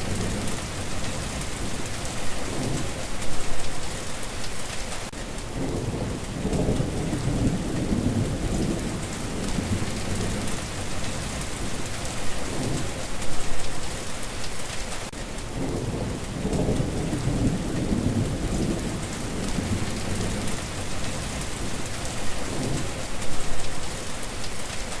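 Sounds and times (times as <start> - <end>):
rolling thunder rumbling: 0.0 - 4.1, 5.4 - 13.8, 15.4 - 24.1
heavy rain hissing: 0.0 - 25.0.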